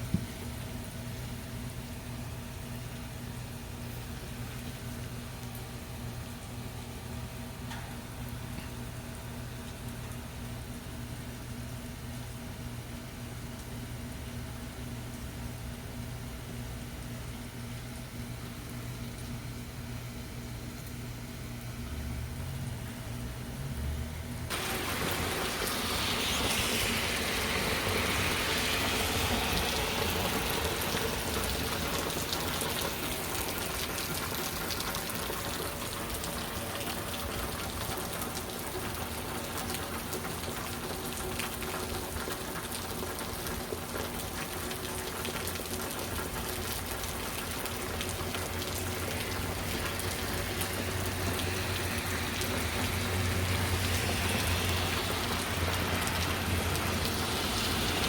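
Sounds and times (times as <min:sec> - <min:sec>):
heavy rain falling: 0:24.5 - 0:58.0.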